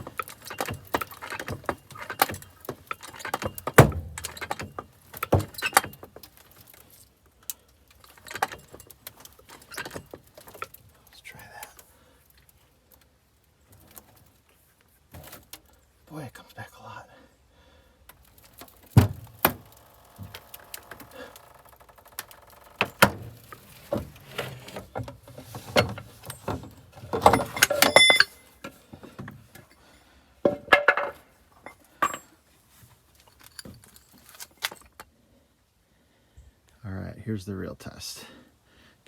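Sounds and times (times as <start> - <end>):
metal tools clanking: 0.0 - 6.7, 8.0 - 10.7, 20.2 - 32.4, 33.2 - 35.0.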